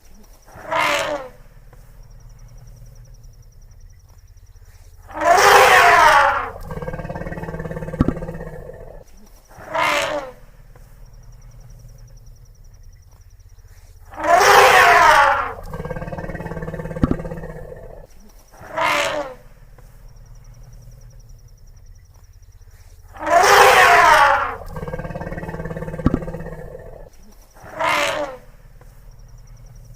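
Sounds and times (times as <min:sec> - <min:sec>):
faint high insect chirping: 0:00.0 - 0:29.9
elephant calls: 0:00.5 - 0:01.6, 0:05.0 - 0:10.5, 0:14.0 - 0:19.7, 0:22.8 - 0:28.7
elephant rumbling breaths: 0:13.5 - 0:21.0, 0:22.1 - 0:29.9.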